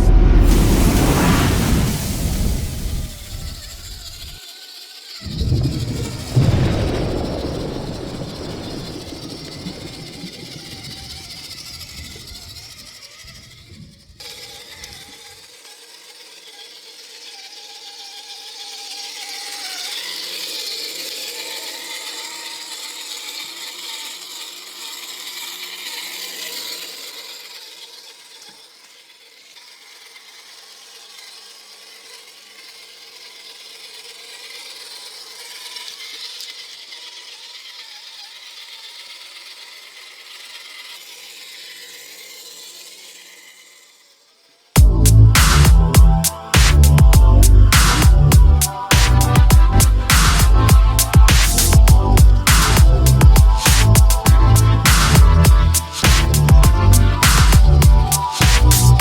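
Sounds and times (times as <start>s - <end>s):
electric motor whine with gear rattle: 0.0s - 0.6s, 1.9s - 59.0s
loud low rumble: 0.0s - 4.4s, 44.8s - 59.0s.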